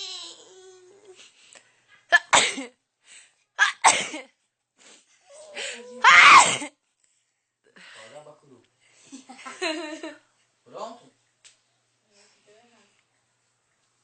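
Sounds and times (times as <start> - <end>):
person sneezing: 6.0 - 6.7.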